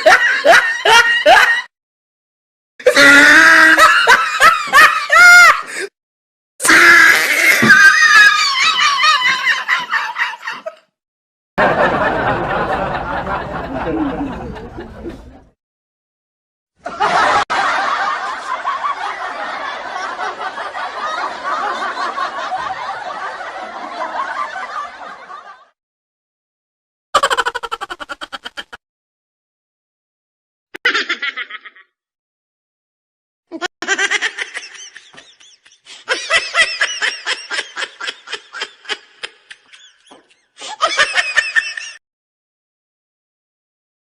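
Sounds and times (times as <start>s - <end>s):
laughing sound effects: 12.7s - 15.5s, 27.2s - 28.8s, 33.5s - 41.7s.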